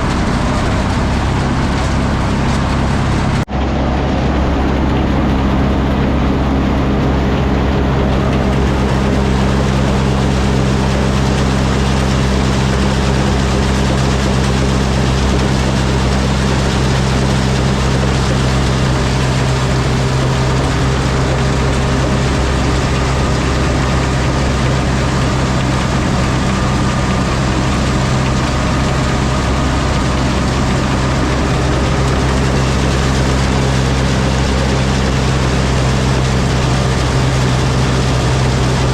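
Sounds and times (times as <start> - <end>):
tractor engine droning: 0.0 - 38.9.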